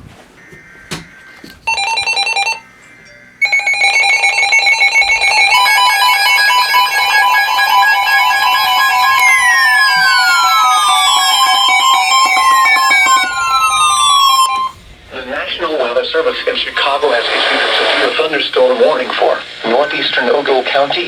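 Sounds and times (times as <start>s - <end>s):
harsh pulsing electronic tones: 1.7s - 2.7s, 3.4s - 21.0s
buzzing tone burst: 3.4s - 15.1s
falling sweeping tones: 4.8s - 17.2s.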